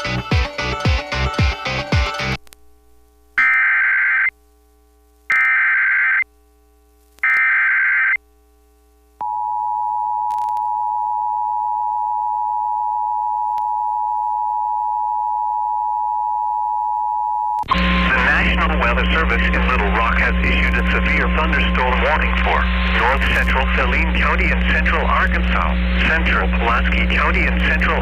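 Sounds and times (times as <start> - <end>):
screeching data tone bursts: 3.4 - 4.3, 5.3 - 6.2, 7.2 - 8.2.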